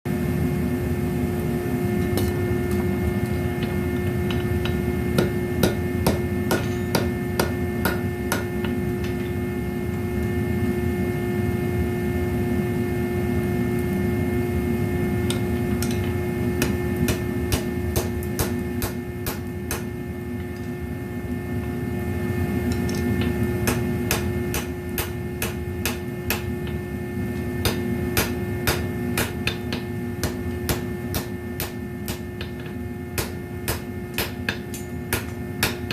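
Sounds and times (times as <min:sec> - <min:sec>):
steady low hum: 0:00.1 - 0:35.9
hammer striking anvil: 0:04.6 - 0:09.3, 0:15.3 - 0:19.9, 0:22.9 - 0:26.7, 0:27.6 - 0:35.9.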